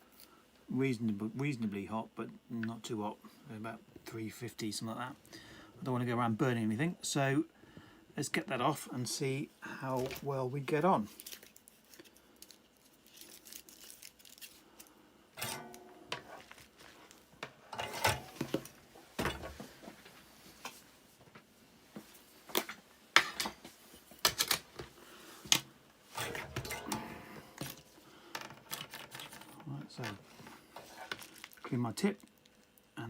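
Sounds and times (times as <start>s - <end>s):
soldering tools clicking and rattling: 22.6s - 24.8s.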